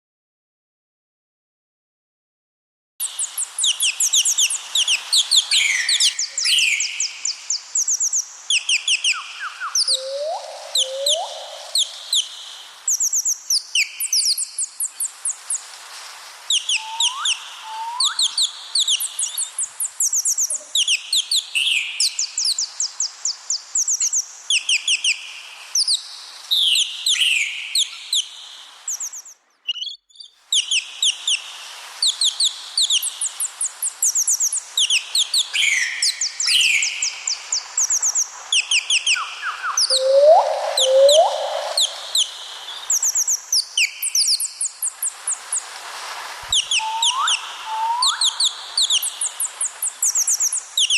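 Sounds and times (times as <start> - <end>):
short rising bird calls: 8.5 - 12.3, 16.5 - 21.8, 28.9 - 45.7, 46.5 - 50.9
birds chirping in rapid trills: 34.1 - 43.4.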